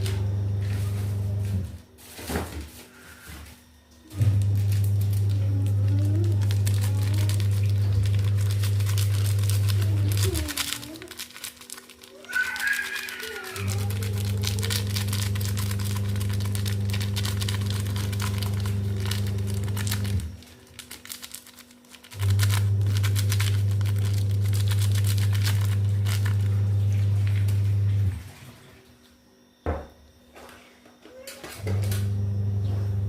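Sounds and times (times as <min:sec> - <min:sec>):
low electric hum: 0:00.0 - 0:33.0
dense crackling clicks: 0:06.1 - 0:13.1.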